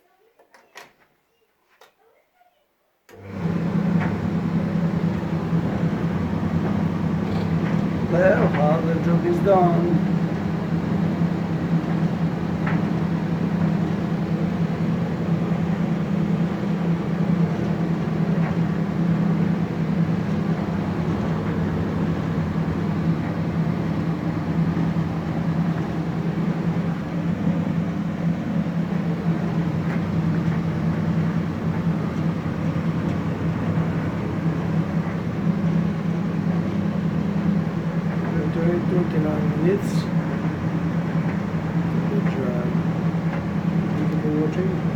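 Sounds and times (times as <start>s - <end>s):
clothes dryer humming: 3.1s - 44.9s.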